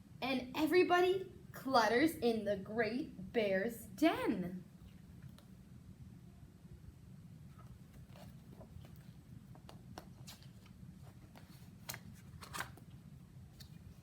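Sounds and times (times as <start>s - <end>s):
low room hum: 0.0s - 14.0s
book pages turning: 7.5s - 14.0s.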